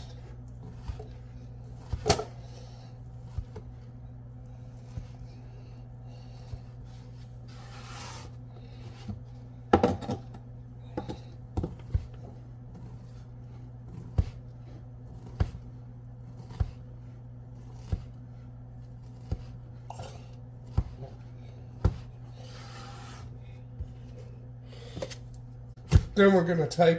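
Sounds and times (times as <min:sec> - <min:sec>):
steady low hum: 0:00.0 - 0:26.9
knife chopping on cutting board: 0:00.6 - 0:02.4, 0:13.9 - 0:16.9, 0:17.6 - 0:18.2, 0:19.0 - 0:19.6, 0:20.6 - 0:23.2.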